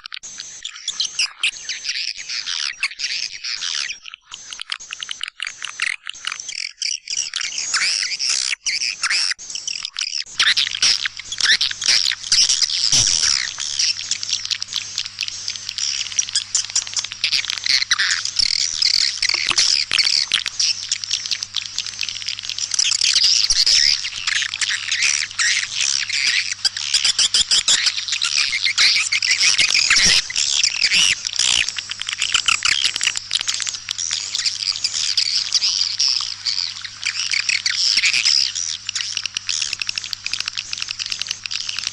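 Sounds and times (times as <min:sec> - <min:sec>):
swiftlets twittering chirps: 0:00.4 - 0:41.9.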